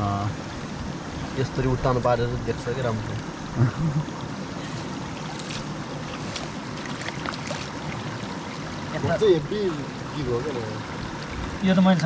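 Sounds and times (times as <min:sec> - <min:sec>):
mountain river rushing: 0:00.0 - 0:12.0.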